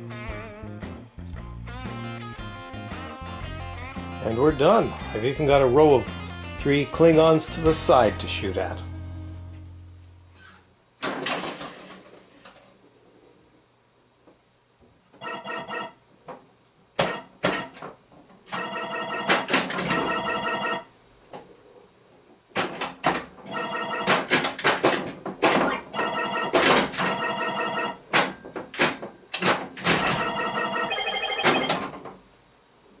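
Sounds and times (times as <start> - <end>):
pinball electronic tones: 18.6 - 20.9, 23.5 - 24.3, 26.0 - 28.0, 30.0 - 31.9.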